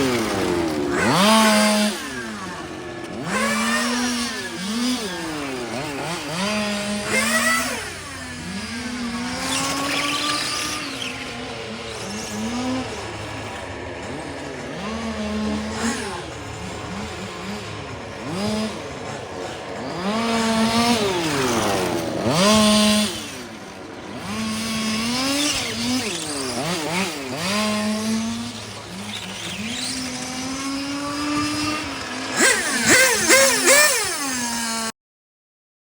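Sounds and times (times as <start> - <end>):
rc car engines revving: 0.0 - 35.0.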